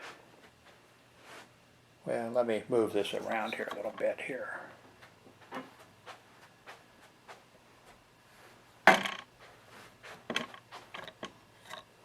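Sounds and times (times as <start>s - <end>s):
handling clicks and knocks: 10.3s - 11.9s.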